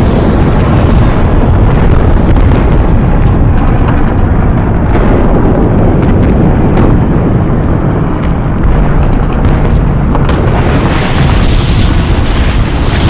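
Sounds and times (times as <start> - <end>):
sharp cracks: 0.0 - 5.2, 8.2 - 13.0
rumble of explosions and artillery: 0.0 - 13.0.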